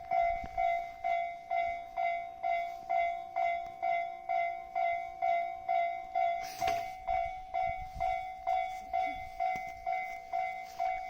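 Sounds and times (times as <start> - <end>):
level crossing bell ringing: 0.0 - 11.0.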